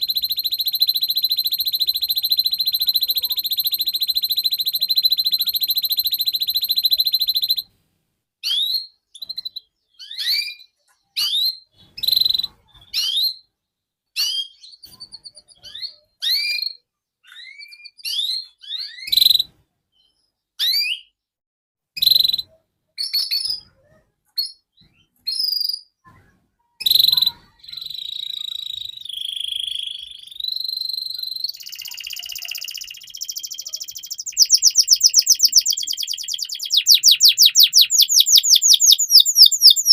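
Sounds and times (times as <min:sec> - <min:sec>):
canary singing: 0:00.0 - 0:07.7, 0:26.8 - 0:39.9.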